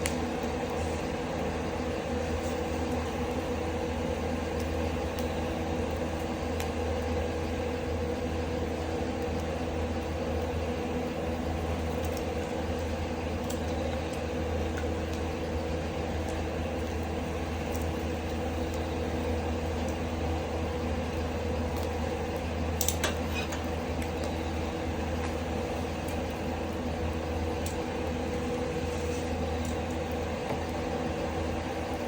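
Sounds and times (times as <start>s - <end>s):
exhaust fan humming: 0.0s - 32.0s
firewood crackling: 0.0s - 32.0s
firewood popping: 11.7s - 30.9s.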